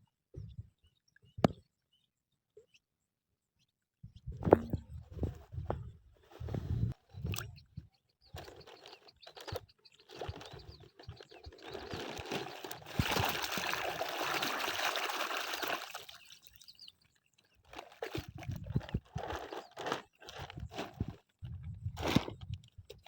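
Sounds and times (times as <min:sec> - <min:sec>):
water splashing and pouring: 0:11.8 - 0:16.7.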